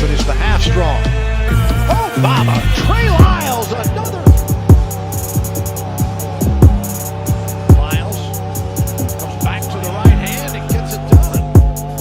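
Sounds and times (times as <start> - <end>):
hip-hop beat: 0.0 - 12.0.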